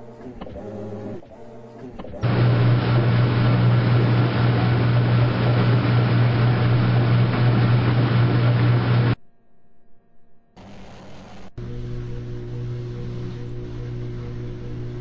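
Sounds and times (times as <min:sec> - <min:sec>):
washing machine running: 0:02.2 - 0:09.2, 0:11.6 - 0:15.0.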